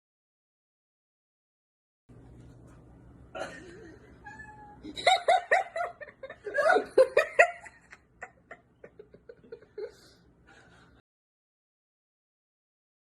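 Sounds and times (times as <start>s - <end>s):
person laughing: 3.4s - 10.2s.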